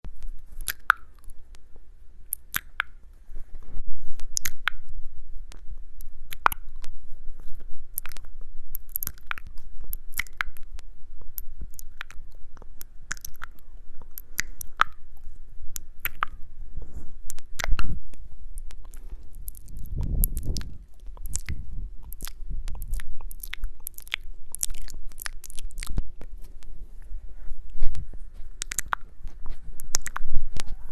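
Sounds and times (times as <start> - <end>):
crunchy bites and chewing: 0.2 - 1.4, 2.3 - 3.0, 5.5 - 10.8, 11.4 - 15.0, 15.8 - 16.4, 18.6 - 26.7, 27.8 - 30.8
sharp food crackles: 0.2 - 1.4, 2.3 - 3.0, 4.2 - 5.0, 6.0 - 10.8, 11.4 - 15.0, 15.8 - 16.4, 17.3 - 18.0, 18.6 - 26.8, 27.7 - 30.9.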